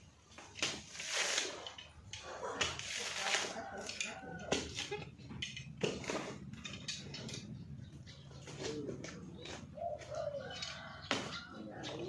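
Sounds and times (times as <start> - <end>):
dove cooing: 8.1 - 12.0.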